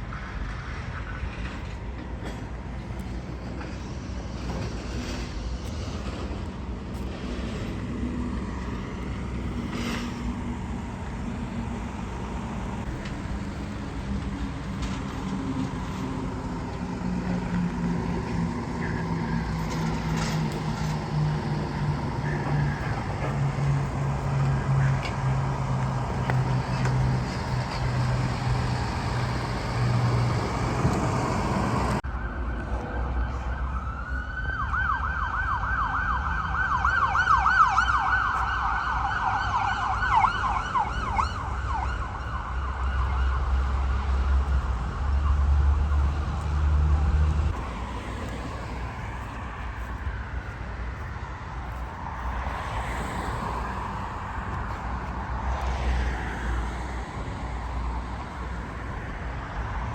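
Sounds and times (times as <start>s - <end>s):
road and vehicle noise: 0.0s - 59.9s
emergency siren yelping: 31.3s - 47.2s.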